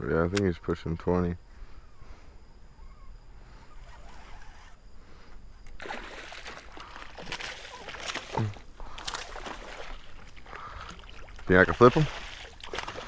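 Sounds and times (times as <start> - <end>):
fish splashing in water: 5.8 - 13.0.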